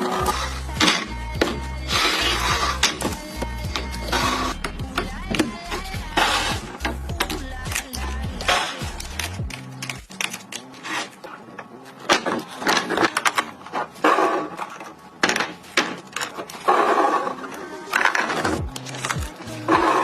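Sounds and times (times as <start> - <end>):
objects clicking and knocking: 12.0 - 16.7.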